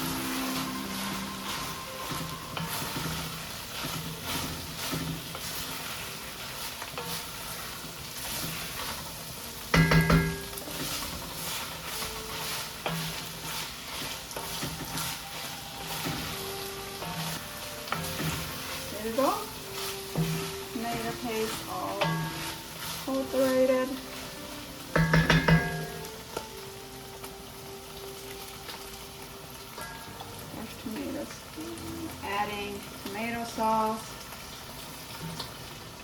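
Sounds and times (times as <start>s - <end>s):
meat sizzling in a pot: 0.0s - 36.0s
utensil clanking against pot: 9.7s - 11.2s, 24.9s - 26.0s.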